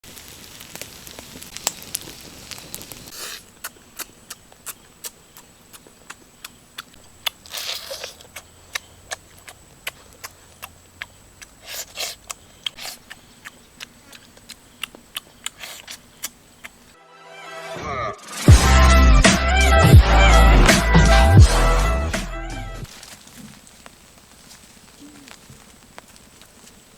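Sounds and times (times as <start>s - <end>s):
low hiss: 0.0s - 17.0s, 22.8s - 26.9s
wood fire crackling and popping: 0.0s - 17.0s, 22.8s - 26.9s.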